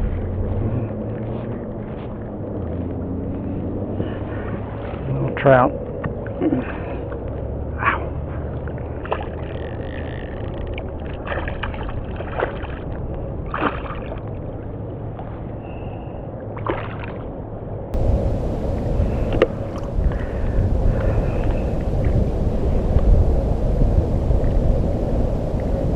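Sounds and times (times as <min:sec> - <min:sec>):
wind noise on microphone: 0:00.0 - 0:06.2, 0:07.0 - 0:14.6, 0:17.9 - 0:25.9
low steady hum: 0:00.0 - 0:25.9
fish splashing in water: 0:06.1 - 0:15.4, 0:16.5 - 0:17.4.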